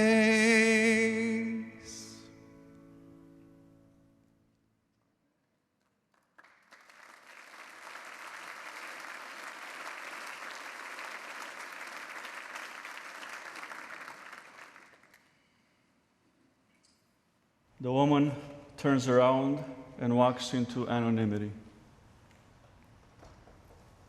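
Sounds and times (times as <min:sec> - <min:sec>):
congregation applauding: 0:05.8 - 0:15.6.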